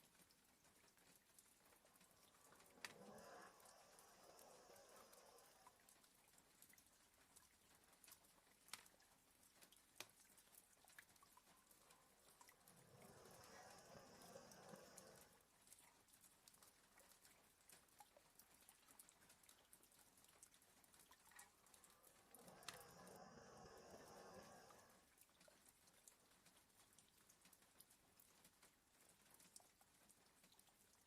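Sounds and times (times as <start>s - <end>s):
faint rain: 0.0s - 31.0s
light drip taps: 0.0s - 31.0s
dog snoring: 2.4s - 5.8s, 12.6s - 15.4s, 22.0s - 25.0s.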